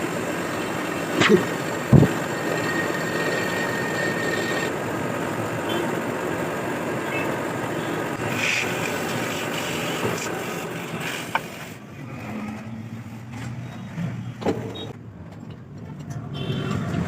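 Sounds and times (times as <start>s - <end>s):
machine running: 0.0s - 12.7s.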